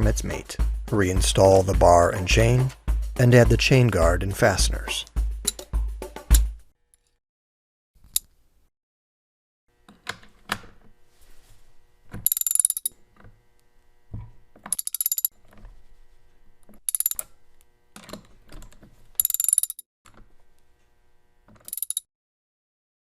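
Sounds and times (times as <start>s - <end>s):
socket wrench ratchet clicking: 5.4s - 5.7s, 12.2s - 12.9s, 14.6s - 15.3s, 16.8s - 17.3s, 19.2s - 19.8s, 21.5s - 22.1s
dull knocks of wrench handled: 5.4s - 6.6s.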